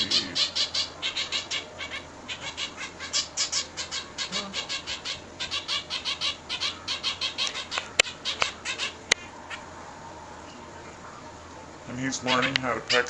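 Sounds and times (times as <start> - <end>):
young bird begging chirps: 0.0 - 9.6.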